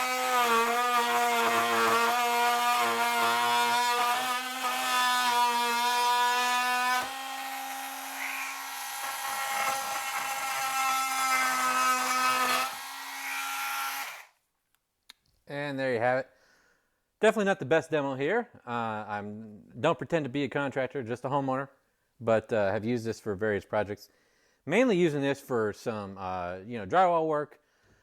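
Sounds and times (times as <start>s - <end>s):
oscillating multi-tool cutting wood: 0.0s - 14.4s.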